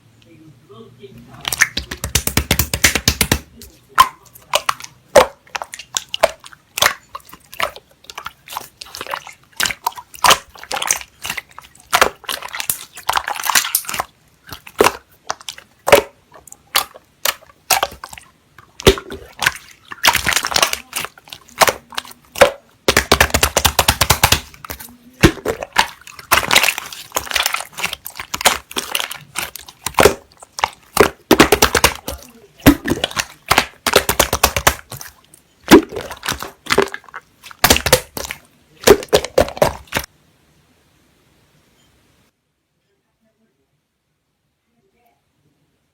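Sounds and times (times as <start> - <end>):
slime sticky clicks and pops: 18.8 - 40.1.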